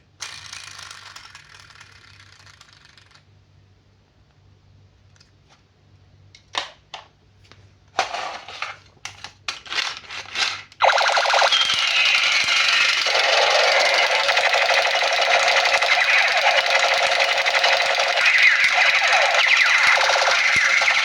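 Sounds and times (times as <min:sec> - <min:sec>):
loud steady noise: 0:10.8 - 0:21.0
sharp clicks: 0:10.8 - 0:21.0.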